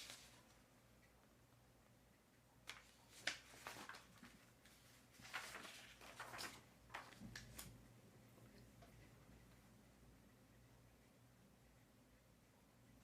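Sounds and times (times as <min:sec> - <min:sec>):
paper rustling: 0:00.0 - 0:00.6, 0:02.7 - 0:07.8
faint low hum: 0:00.0 - 0:13.0.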